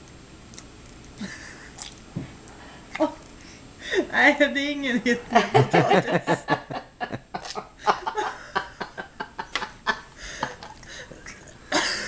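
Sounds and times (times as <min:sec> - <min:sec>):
small clicks and smacks: 0:00.0 - 0:01.2.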